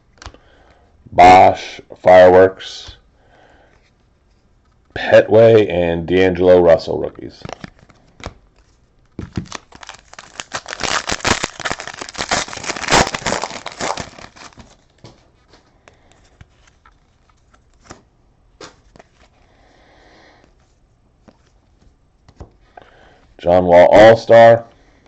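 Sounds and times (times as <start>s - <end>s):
plastic wrapper crinkling and tearing: 7.4s - 15.1s.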